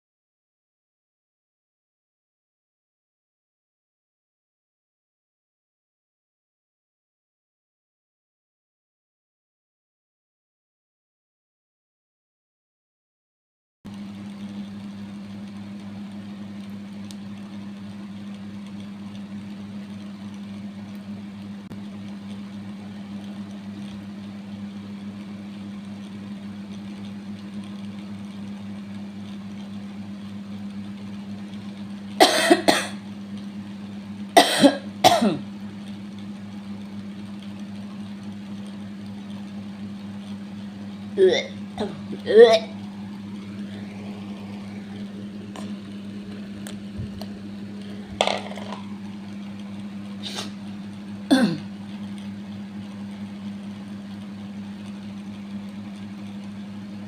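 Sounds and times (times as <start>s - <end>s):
steady low hum: 13.9s - 57.0s
person coughing: 32.2s - 33.0s, 34.4s - 35.4s, 51.3s - 51.7s.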